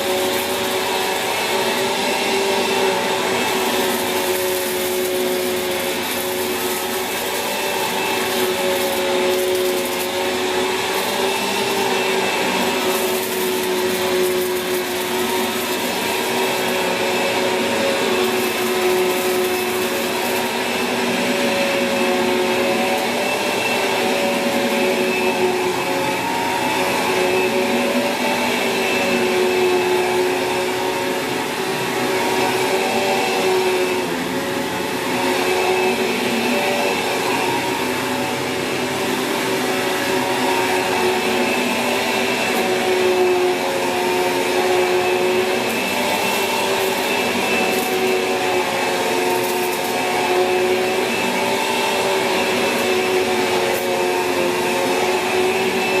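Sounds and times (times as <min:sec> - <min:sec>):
vacuum cleaner running on carpet: 0:00.0 - 0:56.0.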